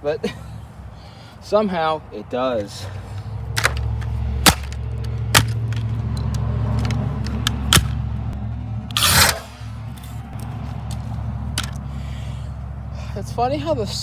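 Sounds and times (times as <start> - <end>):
steady low rumble: 3.0 - 14.0
plastic clatter: 3.6 - 4.8
sledgehammer striking plastic: 3.6 - 5.9, 7.7 - 8.0.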